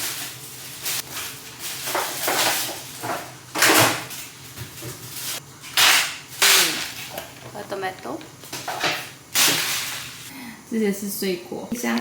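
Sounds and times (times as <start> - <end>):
jars and packets knocking and rustling: 1.0 - 6.0.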